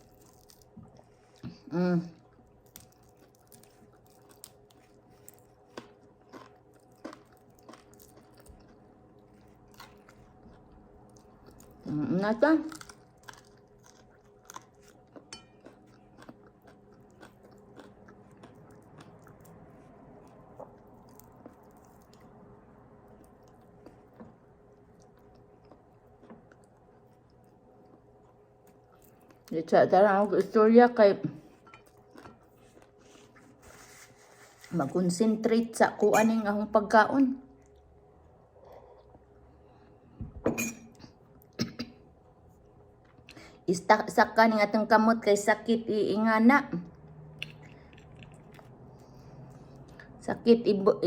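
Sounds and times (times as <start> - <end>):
faint steady hum: 0.0 - 51.0
person chewing food: 2.2 - 11.8, 12.7 - 29.5, 31.5 - 34.7, 47.3 - 50.1.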